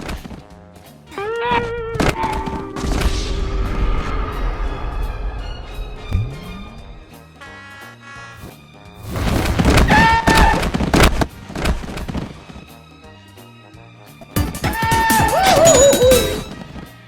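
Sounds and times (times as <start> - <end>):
music: 0.0 - 17.0
loud bangs and crashes: 2.8 - 7.4.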